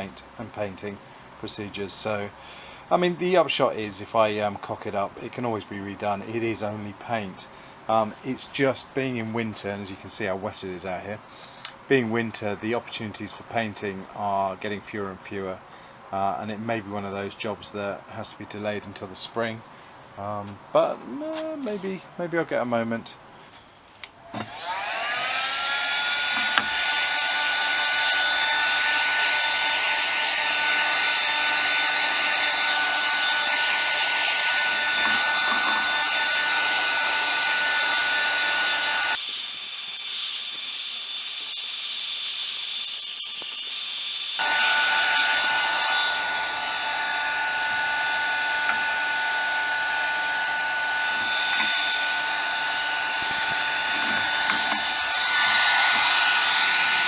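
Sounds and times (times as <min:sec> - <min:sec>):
electric motor whining: 0:24.3 - 0:39.2, 0:44.4 - 0:57.0.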